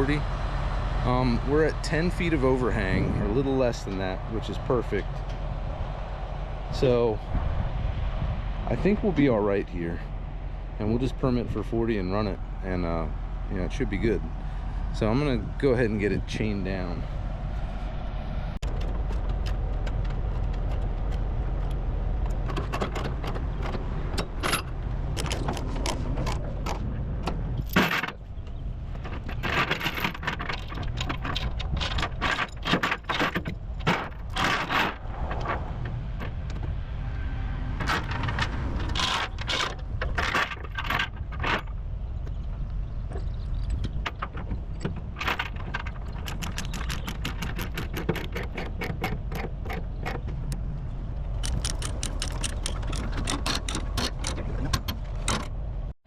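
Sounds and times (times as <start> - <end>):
steel chains rattling: 51.4 - 55.5.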